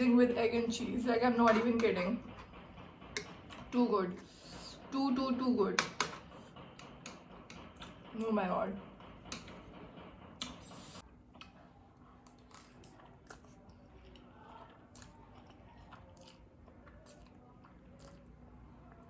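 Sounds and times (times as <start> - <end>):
person chewing noodles: 10.4 - 19.0.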